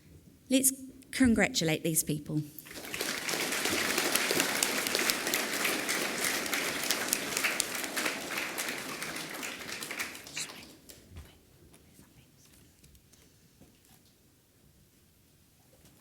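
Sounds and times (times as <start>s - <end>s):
children applauding: 2.6s - 11.0s.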